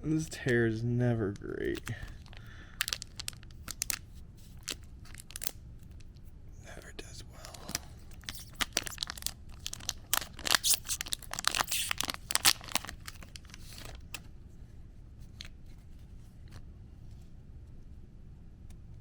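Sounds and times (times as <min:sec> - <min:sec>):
wrapper being torn and crinkled: 0:01.3 - 0:06.2, 0:07.4 - 0:14.0.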